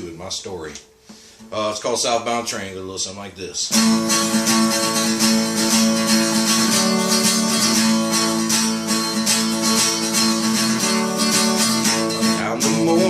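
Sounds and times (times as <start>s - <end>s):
acoustic guitar strumming: 3.7s - 13.0s.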